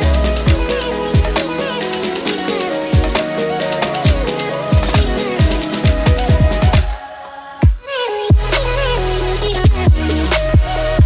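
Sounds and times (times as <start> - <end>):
held melody line: 0.0 - 7.5
deep booming bass drum: 9.6 - 10.8.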